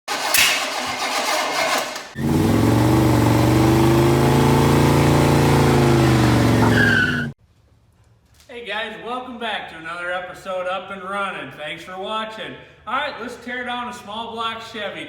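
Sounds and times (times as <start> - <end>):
engine running and revving: 0.3 - 7.4.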